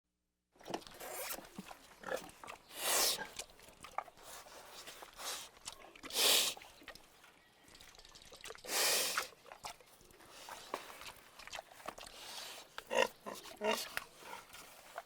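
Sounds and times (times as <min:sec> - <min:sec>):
pig grunting and snorting: 0:00.6 - 0:06.6, 0:11.4 - 0:15.0.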